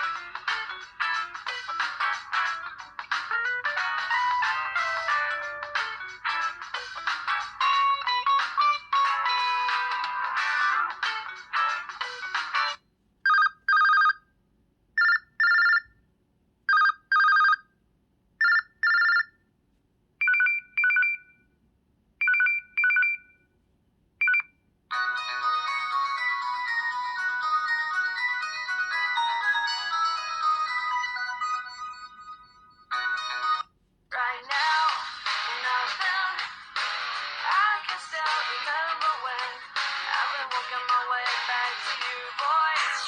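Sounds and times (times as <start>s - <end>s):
melodic phone ringtone: 0.0s - 14.2s, 15.0s - 15.9s, 16.7s - 17.6s, 18.4s - 19.3s, 20.2s - 21.3s, 22.2s - 23.3s, 24.2s - 33.7s
electronic ring of paired beeps: 31.0s - 33.6s.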